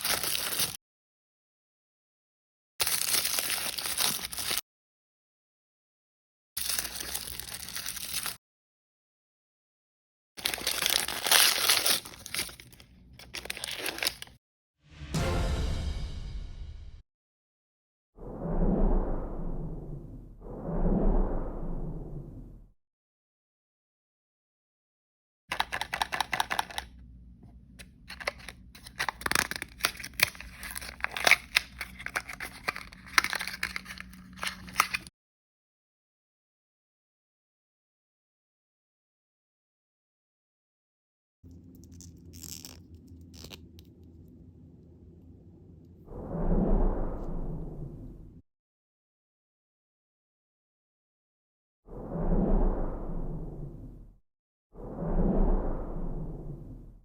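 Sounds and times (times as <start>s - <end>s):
plastic packaging crinkling and tearing: 0.0s - 0.8s, 2.8s - 4.6s, 6.6s - 8.4s, 10.4s - 14.4s, 27.8s - 35.1s
whooshing musical sound effect: 14.9s - 17.0s, 18.2s - 22.6s.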